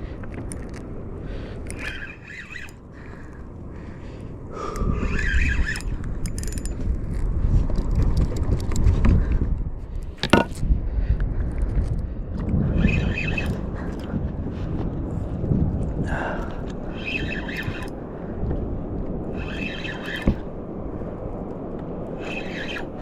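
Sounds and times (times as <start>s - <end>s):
wind on microphone: 0.0s - 23.0s
fishing reel cranking: 1.6s - 3.4s, 4.6s - 6.8s, 12.7s - 14.1s, 16.7s - 18.0s, 19.3s - 20.5s, 22.2s - 23.0s.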